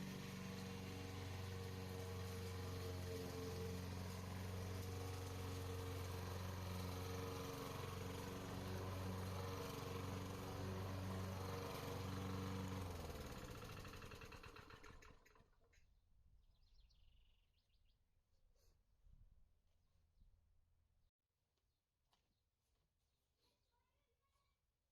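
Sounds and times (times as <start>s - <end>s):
lawn mower engine: 0.0s - 15.7s
faint bird chirps: 16.4s - 18.1s.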